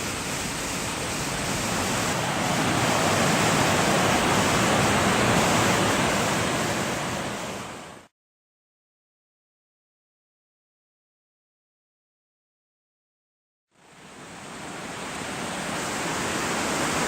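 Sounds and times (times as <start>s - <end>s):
waterfall roar: 0.0s - 8.1s, 13.8s - 17.0s.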